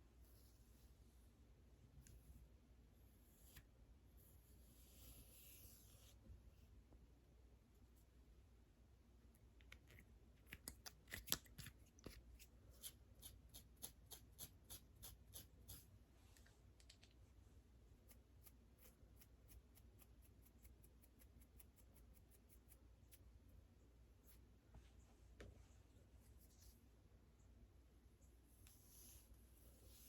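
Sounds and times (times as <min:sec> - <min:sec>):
scratching a scalp: 0:11.8 - 0:16.0, 0:17.9 - 0:24.8.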